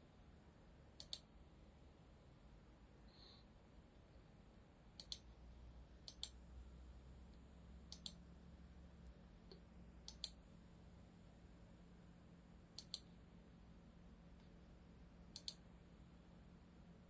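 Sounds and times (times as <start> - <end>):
faint low hum: 0.0 - 17.0
computer mouse clicking: 1.0 - 1.3, 5.0 - 5.3, 6.0 - 6.4, 7.9 - 8.2, 9.5 - 10.4, 12.7 - 13.1, 15.3 - 15.6.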